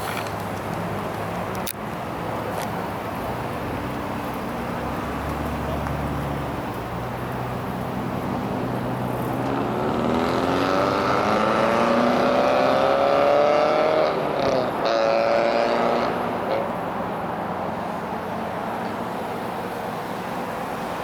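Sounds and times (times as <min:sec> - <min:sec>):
car engine revving: 0:07.8 - 0:16.8.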